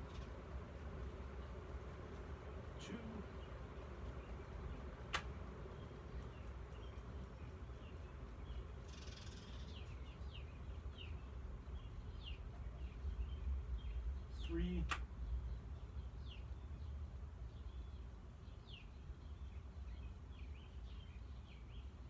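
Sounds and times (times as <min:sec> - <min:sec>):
ceiling fan motor humming: 0:00.0 - 0:22.0
sharp click: 0:05.1 - 0:05.4, 0:14.8 - 0:15.1.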